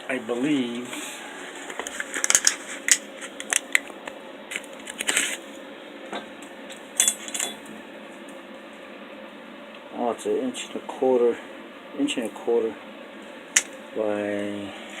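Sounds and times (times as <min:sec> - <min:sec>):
steel pieces clinking: 0:07.0 - 0:07.6.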